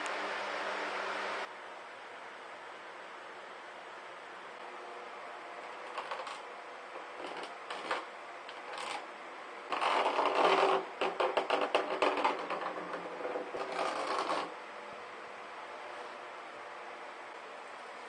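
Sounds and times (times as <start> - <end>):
rapid crackling clicks: 5.8 - 9.0, 9.7 - 14.5.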